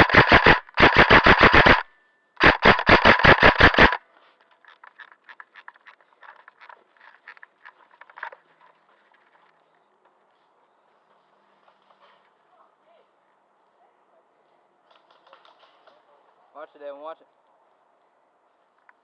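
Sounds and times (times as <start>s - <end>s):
airsoft gun firing bursts: 0.0s - 4.0s
faint scattered clicks: 3.9s - 10.2s, 18.7s - 19.0s.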